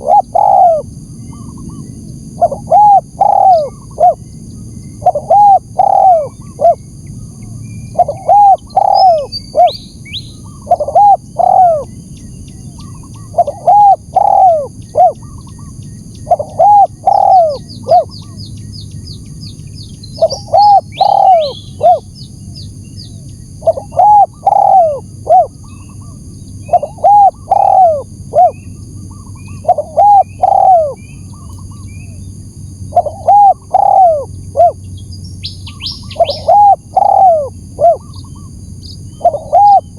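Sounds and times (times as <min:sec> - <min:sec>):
dove cooing: 0:00.0 - 0:01.8, 0:02.4 - 0:04.2, 0:05.0 - 0:06.8, 0:07.9 - 0:09.8, 0:10.4 - 0:11.9, 0:12.7 - 0:18.4, 0:20.2 - 0:22.1, 0:23.6 - 0:28.6, 0:29.2 - 0:32.2, 0:32.8 - 0:34.8, 0:35.7 - 0:38.5, 0:39.1 - 0:39.9
small birds chirping: 0:00.0 - 0:39.9.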